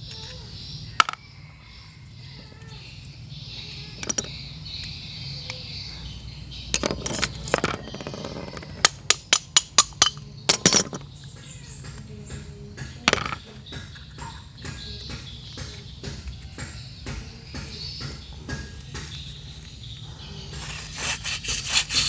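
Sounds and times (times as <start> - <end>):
tools tapping and clinking on metal: 3.8 - 5.6, 6.7 - 20.0.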